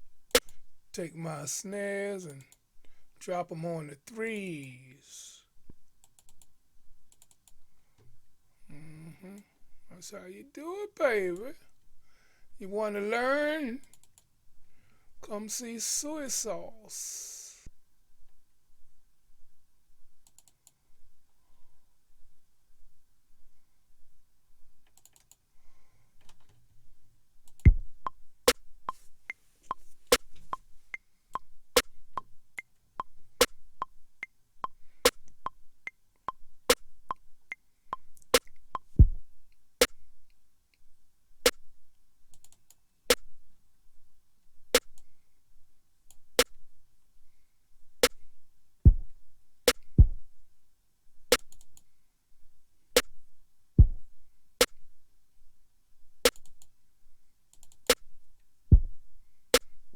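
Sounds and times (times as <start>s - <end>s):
deep kick drums: 27.7s - 28.1s, 39.0s - 39.2s, 48.9s - 49.1s, 50.0s - 50.2s, 53.8s - 54.0s, 58.7s - 59.0s.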